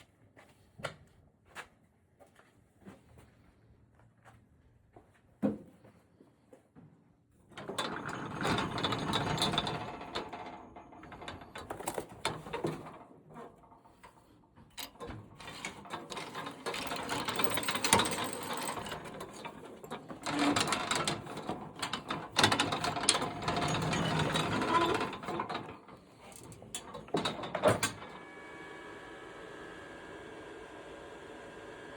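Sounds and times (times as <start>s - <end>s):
bandsaw mill rattling and clicking: 7.6s - 28.2s.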